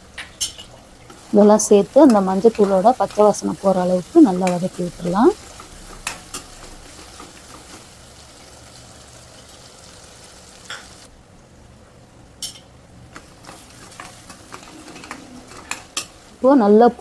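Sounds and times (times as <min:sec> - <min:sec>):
vegetables sizzling in oil: 0:00.0 - 0:11.1, 0:12.4 - 0:17.0
spoon scraping pan: 0:00.4 - 0:08.0, 0:13.2 - 0:16.2.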